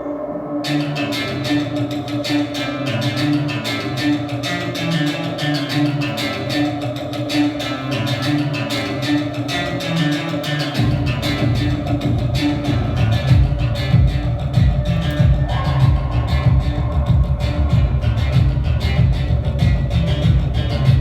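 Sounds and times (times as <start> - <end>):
plucked string music: 0.0 - 21.0
sustained low notes: 7.6 - 21.0.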